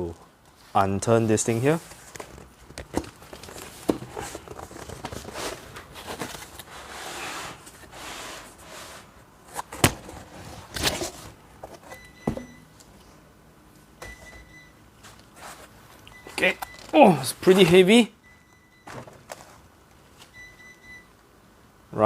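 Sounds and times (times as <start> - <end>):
cardboard and wrapping rustling: 0.5 - 12.0, 15.0 - 15.8, 18.9 - 20.2.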